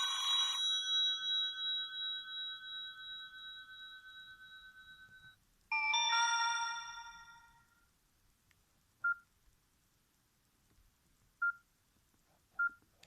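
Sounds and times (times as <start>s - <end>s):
ringtone: 0.0s - 7.8s.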